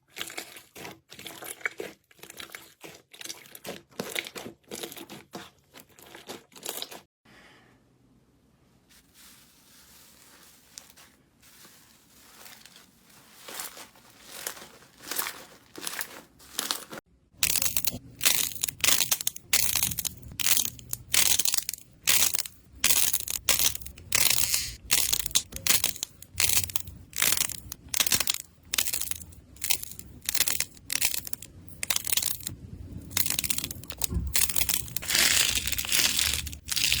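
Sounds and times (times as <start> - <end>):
slime squishing: 0.0 - 7.1, 11.7 - 37.0
crunchy crushing strokes: 9.8 - 37.0.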